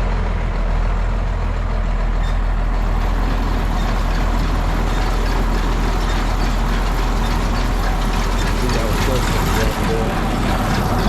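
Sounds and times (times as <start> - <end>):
tractor engine running: 0.0 - 11.0
hay baler mechanism and chains: 2.2 - 11.0.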